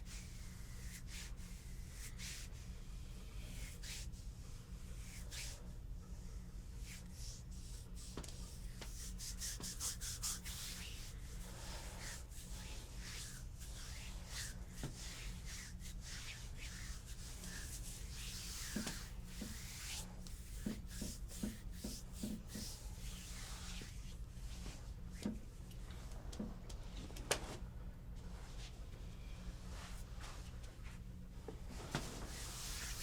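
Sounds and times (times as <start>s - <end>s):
steady low hum: 0.0s - 33.0s
hands rubbing over skin: 6.8s - 24.8s, 32.0s - 33.0s.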